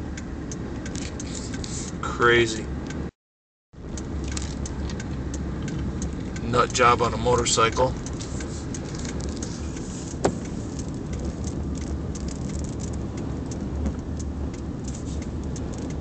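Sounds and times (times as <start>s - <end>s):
car engine and road rumble: 0.0s - 3.1s, 3.8s - 16.0s
light ticks and rattles: 3.9s - 16.0s.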